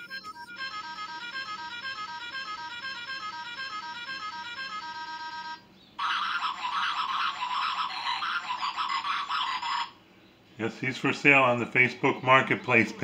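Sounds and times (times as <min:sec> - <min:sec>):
electronic beeping tune: 0:00.0 - 0:05.6.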